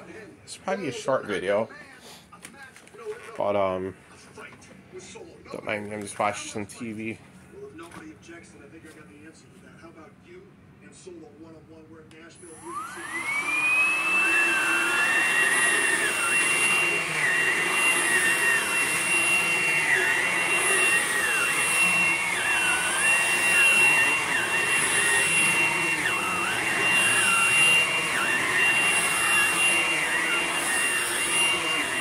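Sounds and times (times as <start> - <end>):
stick vacuum motor whine: 12.4 - 32.0.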